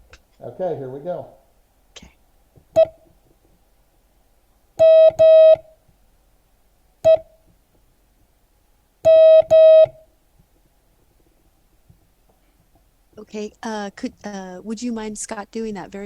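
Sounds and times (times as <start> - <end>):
morse code tone: 4.8 - 5.7, 9.1 - 10.0.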